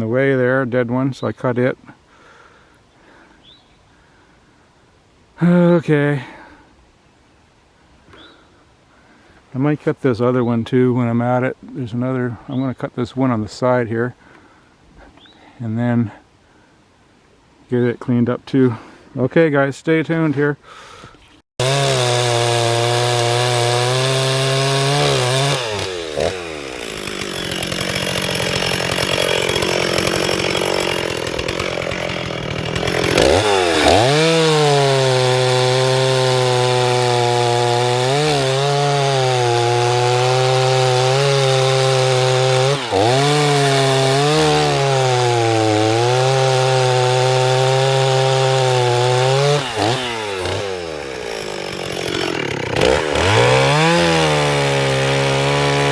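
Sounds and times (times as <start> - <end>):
chainsaw cutting wood: 21.6 - 55.9.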